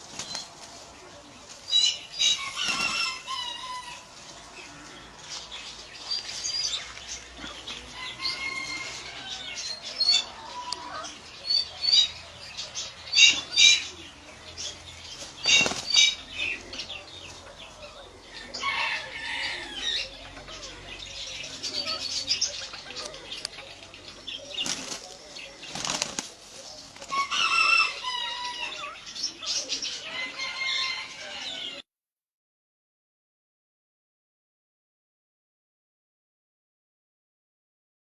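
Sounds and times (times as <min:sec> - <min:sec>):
wing flapping: 0:00.0 - 0:00.9, 0:15.2 - 0:16.2, 0:24.6 - 0:27.3
bird calls and squawks: 0:01.6 - 0:31.8.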